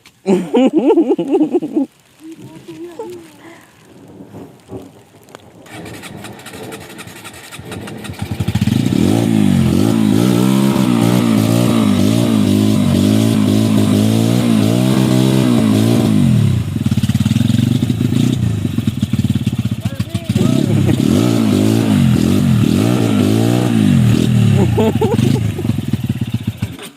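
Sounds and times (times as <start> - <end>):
motorcycle engine revving: 5.6 - 26.9.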